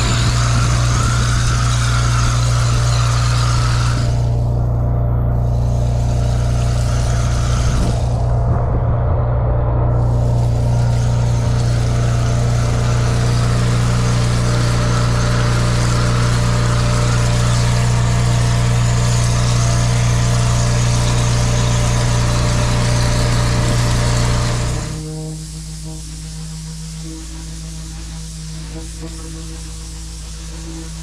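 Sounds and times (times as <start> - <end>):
pressure washer engine running: 0.0 - 8.3, 10.0 - 31.0
water spray hissing jet: 10.1 - 31.0.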